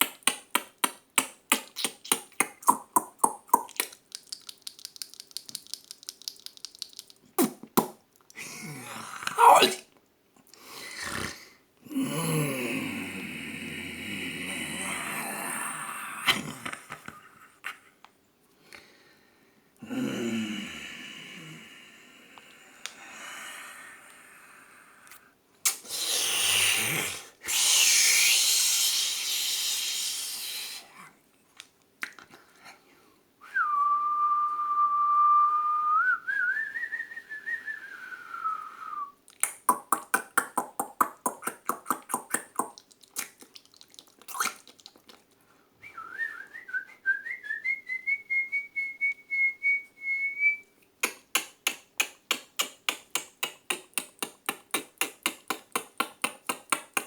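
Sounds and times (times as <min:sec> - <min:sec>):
tongue clicks: 0:00.0 - 0:08.4, 0:25.1 - 0:25.9, 0:31.6 - 0:32.3, 0:39.3 - 0:45.4, 0:51.0 - 0:57.0
breathy blown hiss: 0:25.7 - 0:31.0
person whistling: 0:33.4 - 0:39.2, 0:45.8 - 0:50.7.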